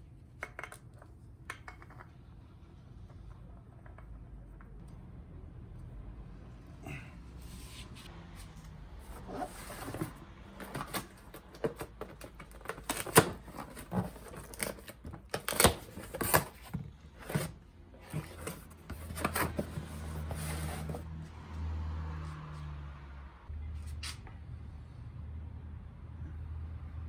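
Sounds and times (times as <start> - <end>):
hand tools clicking and knocking: 0.4 - 2.2, 9.8 - 19.9.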